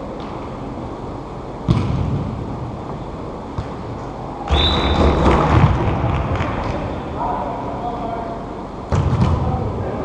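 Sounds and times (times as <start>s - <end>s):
ball thud: 1.7s - 2.3s
high whistle tone: 4.4s - 5.2s.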